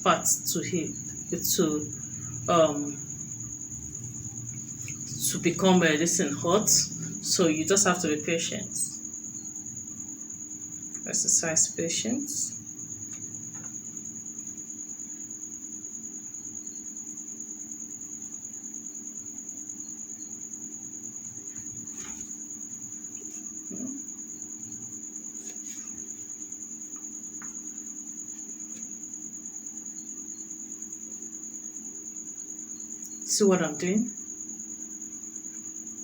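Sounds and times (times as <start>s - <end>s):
low steady hum: 0.0s - 28.1s.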